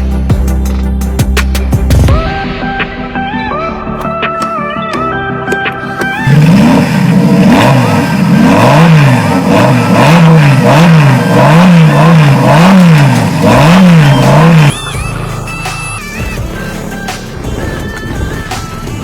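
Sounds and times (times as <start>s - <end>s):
vehicle engine revving: 6.0s - 19.0s.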